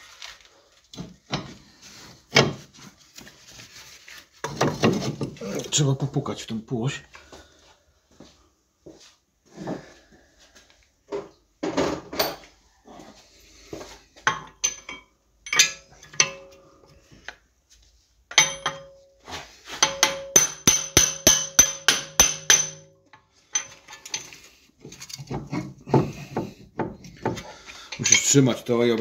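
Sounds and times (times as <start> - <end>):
hammer striking metal driveshaft: 14.7 - 16.6, 18.3 - 19.0, 19.8 - 22.9.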